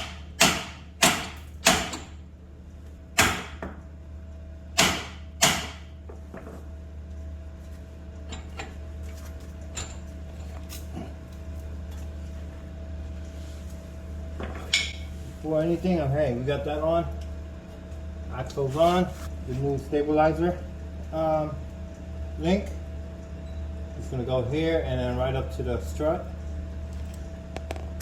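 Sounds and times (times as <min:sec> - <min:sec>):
hammer striking metal: 0:00.0 - 0:02.0, 0:04.8 - 0:05.8.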